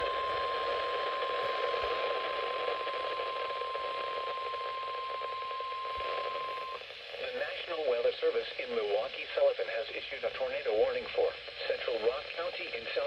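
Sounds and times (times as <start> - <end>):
steady alarm tone: 0.0 - 6.8
radio static hiss: 0.0 - 13.0.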